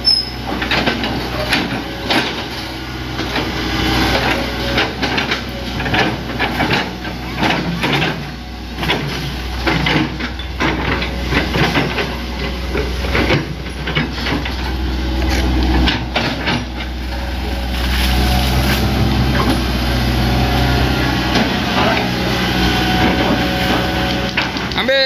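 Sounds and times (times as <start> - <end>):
machine knocks and clanks: 0.0 - 17.6
excavator diesel engine running: 0.0 - 25.0.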